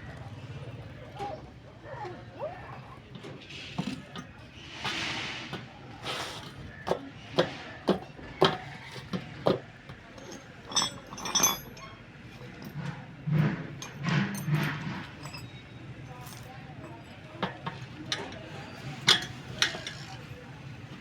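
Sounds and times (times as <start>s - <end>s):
metal knocks and clinks: 8.4s - 20.2s.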